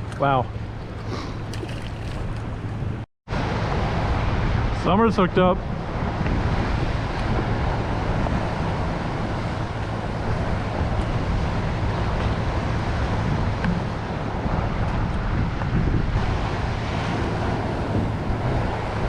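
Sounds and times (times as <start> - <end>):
low steady hum: 0.0 - 3.0
waves washing: 0.0 - 4.8, 16.2 - 19.0
wind buffeting microphone: 0.0 - 19.0.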